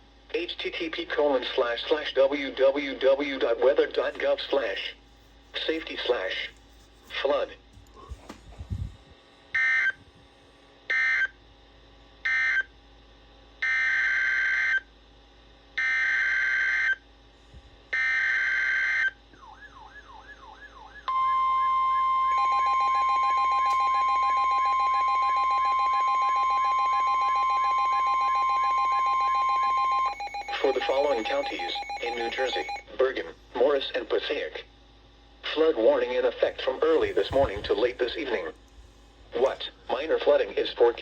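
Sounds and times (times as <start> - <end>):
steady warning alarm tone: 9.5 - 10.0, 10.9 - 11.4, 12.2 - 12.8, 13.6 - 14.9, 15.8 - 17.0, 18.0 - 33.2, 36.4 - 38.6
warbling buzzing alarm: 9.5 - 10.2, 10.9 - 11.4, 12.2 - 12.8, 13.6 - 14.9, 15.8 - 17.1, 17.9 - 32.9, 36.6 - 38.6
digital data bursts: 30.1 - 32.8.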